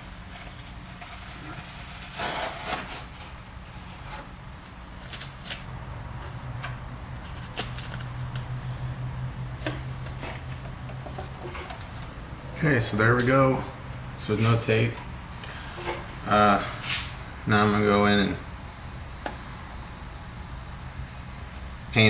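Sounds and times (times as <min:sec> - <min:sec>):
low steady hum: 0:00.0 - 0:22.0
tape ripping and crinkling: 0:07.2 - 0:08.4.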